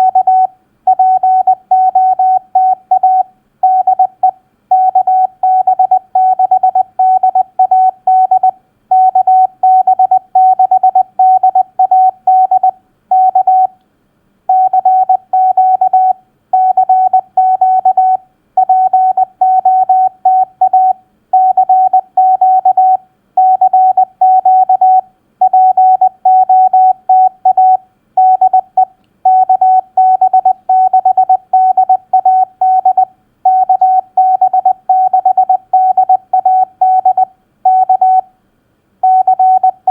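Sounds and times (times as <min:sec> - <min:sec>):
morse code tone: 0:14.5 - 0:38.2, 0:39.0 - 0:39.9.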